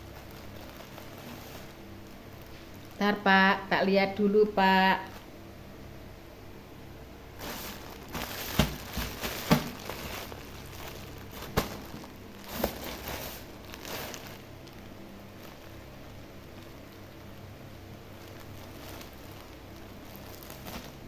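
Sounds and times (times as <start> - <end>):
packaging crinkling: 0.0 - 3.0, 7.4 - 17.4, 18.0 - 21.0.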